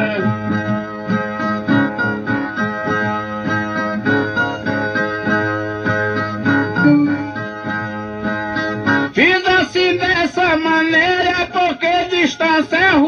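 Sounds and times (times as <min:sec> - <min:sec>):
plucked ten-string viola: 0:00.0 - 0:09.2.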